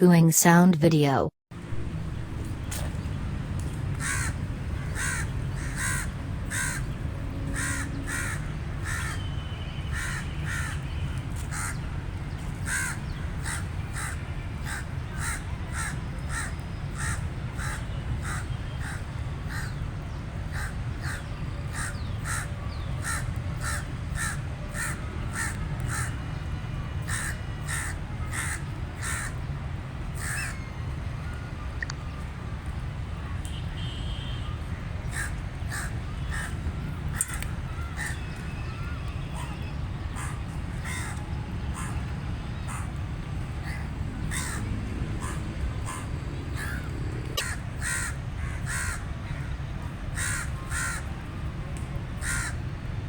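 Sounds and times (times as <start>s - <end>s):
steady low rumble: 1.6s - 3.8s
crow cawing: 4.0s - 4.3s, 4.9s - 6.8s, 7.6s - 9.2s, 10.0s - 10.8s, 12.7s - 19.7s, 27.1s - 29.3s, 43.6s - 44.6s, 47.4s - 49.4s, 50.2s - 51.1s, 52.2s - 52.5s.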